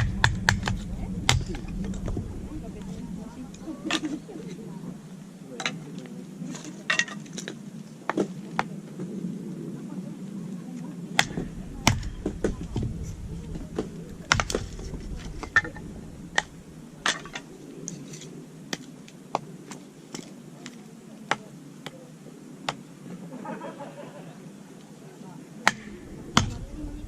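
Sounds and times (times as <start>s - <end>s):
wood fire crackling: 0.0s - 5.4s, 11.1s - 18.3s, 25.7s - 27.0s
low rumble: 0.0s - 5.5s, 11.1s - 17.8s, 25.8s - 27.0s.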